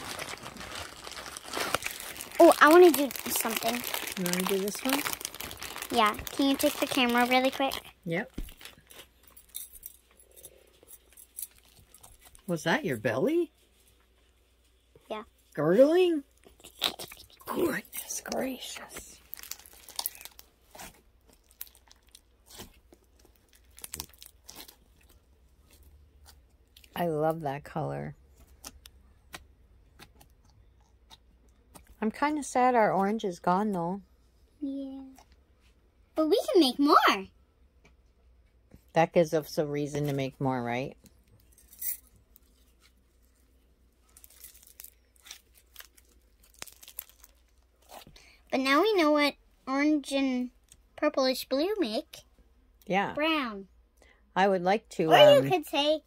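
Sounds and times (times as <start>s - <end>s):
slime crackling: 0.0s - 7.9s, 16.4s - 25.2s, 44.2s - 48.0s.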